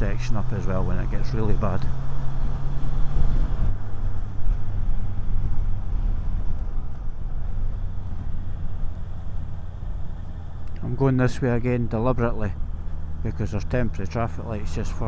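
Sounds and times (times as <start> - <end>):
wind rush: 2.4 - 9.1.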